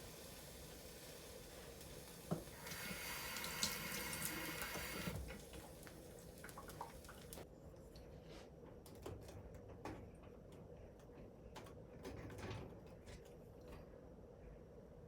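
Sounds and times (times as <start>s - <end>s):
kitchen tap running: 0.0s - 7.4s.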